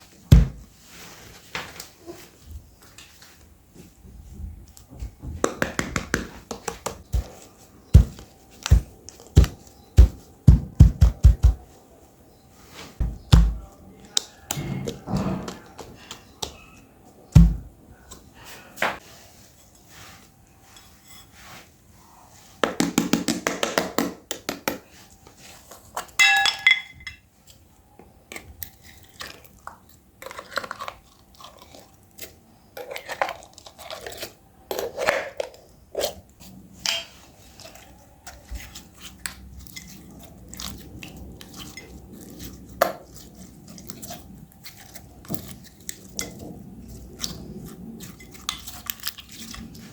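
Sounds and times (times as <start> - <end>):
slime squelching and crackling: 35.9 - 49.9.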